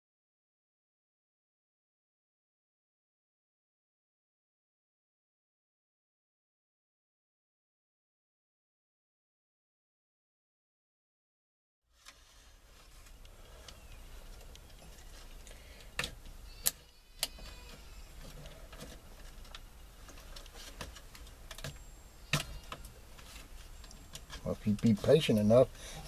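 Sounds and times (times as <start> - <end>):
low steady hum: 12.0 - 26.0.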